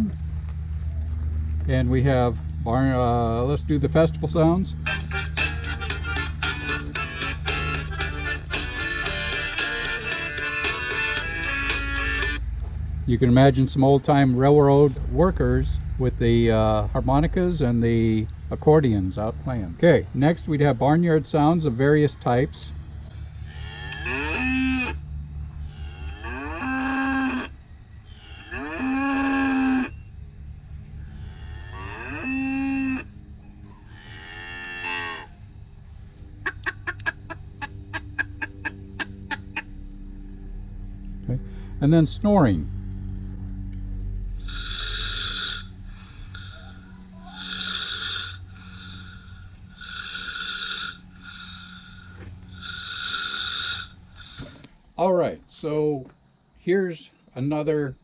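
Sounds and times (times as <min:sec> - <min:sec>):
steady low hum: 0:00.0 - 0:58.0
cows mooing through speakers: 0:23.0 - 0:54.6
snoring through speakers: 0:44.4 - 0:54.6.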